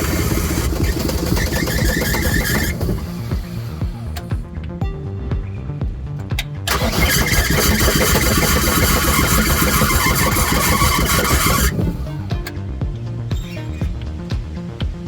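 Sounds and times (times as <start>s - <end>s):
diesel engine cranking on starter: 0.0s - 4.8s, 6.2s - 12.6s
background music: 0.0s - 15.0s.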